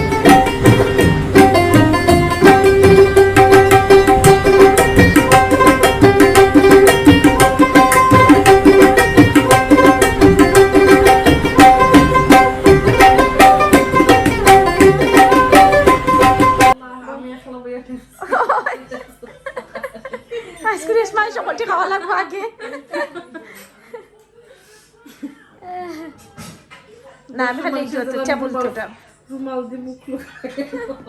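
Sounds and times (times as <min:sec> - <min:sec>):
plucked strings over fast drums: 0:00.0 - 0:16.8.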